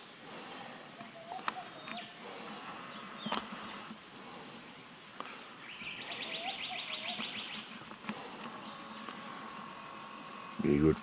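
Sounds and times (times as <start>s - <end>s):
insects droning: 0.0s - 11.0s
faint whistling bird calls: 1.0s - 3.4s, 5.6s - 7.7s.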